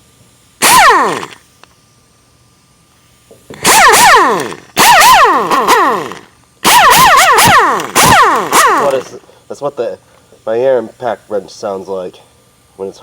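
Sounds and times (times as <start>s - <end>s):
air impact wrench whirring: 0.6s - 1.6s, 3.5s - 9.3s.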